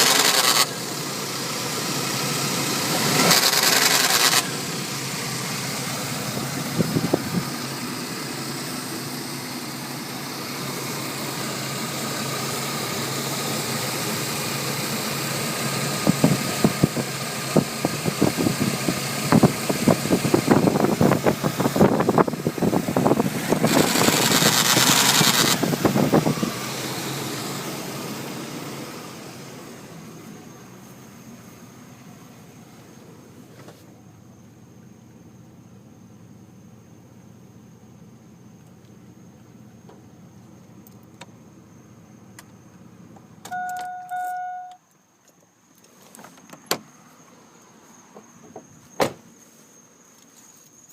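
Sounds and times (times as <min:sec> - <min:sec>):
rapid distributor clicking: 0:00.0 - 0:00.9, 0:03.2 - 0:04.6, 0:19.3 - 0:26.3
engine running: 0:00.0 - 0:43.5
loud hiss: 0:19.5 - 0:30.9
short beeps: 0:43.5 - 0:44.8.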